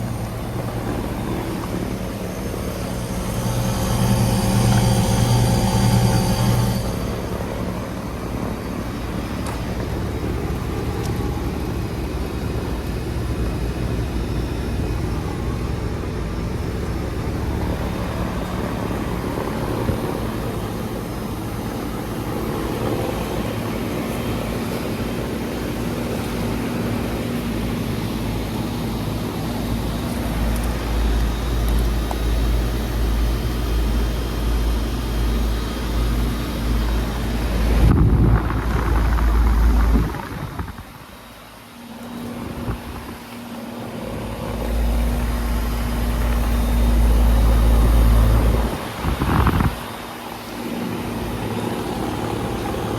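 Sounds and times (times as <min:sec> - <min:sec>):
fan whoosh: 0:00.0 - 0:09.4, 0:36.8 - 0:41.3
heavy low rumble: 0:00.0 - 0:25.8, 0:28.8 - 0:51.1
compressor hum: 0:00.0 - 0:52.9.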